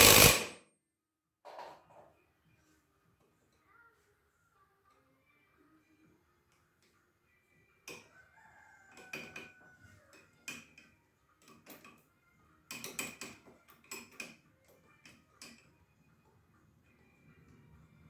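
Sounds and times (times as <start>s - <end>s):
metal tools clinking: 0.0s - 0.6s.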